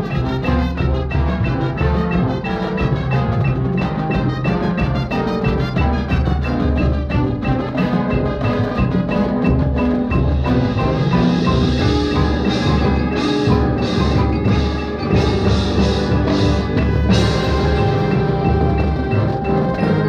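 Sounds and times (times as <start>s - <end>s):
marching band playing: 0.0s - 20.0s.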